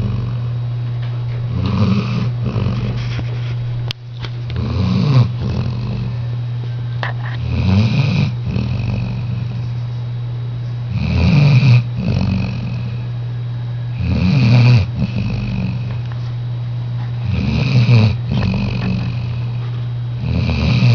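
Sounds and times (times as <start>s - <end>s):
dog snoring: 0.0s - 0.6s, 1.5s - 3.6s, 4.5s - 6.3s, 7.0s - 9.9s, 10.9s - 13.1s, 13.9s - 16.2s, 17.2s - 20.9s
steady low hum: 0.0s - 20.9s.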